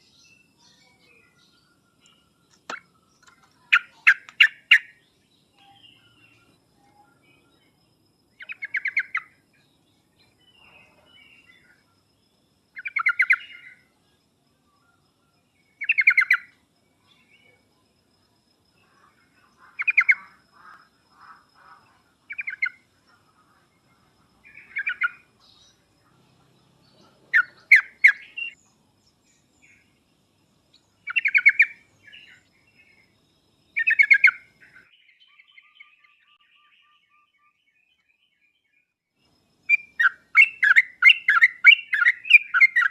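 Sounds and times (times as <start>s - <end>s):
rasping bird chatter: 2.0s - 5.1s, 18.8s - 28.6s, 31.1s - 32.4s.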